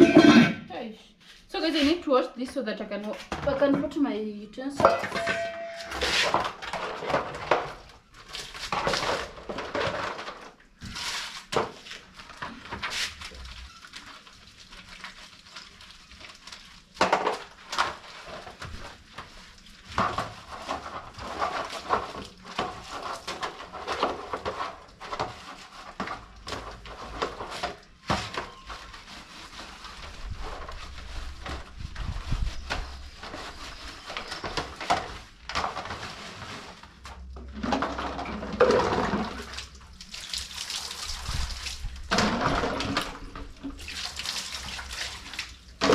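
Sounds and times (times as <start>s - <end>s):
dishware clattering: 0.0s - 0.6s, 4.8s - 6.1s
scrubbing dishes: 0.0s - 0.6s, 4.8s - 45.9s.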